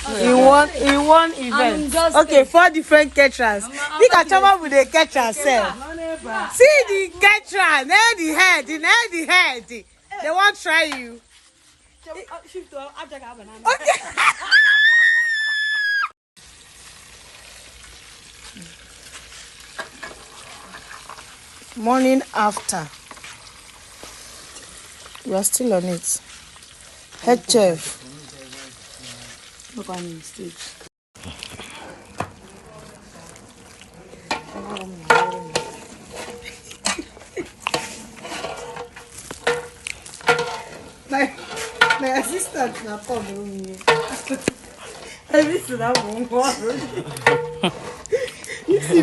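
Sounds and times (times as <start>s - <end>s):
food frying in hot oil: 0.0s - 13.3s, 16.4s - 47.8s
metal utensils clanking on pots: 0.1s - 3.4s, 19.6s - 23.3s, 31.6s - 49.0s.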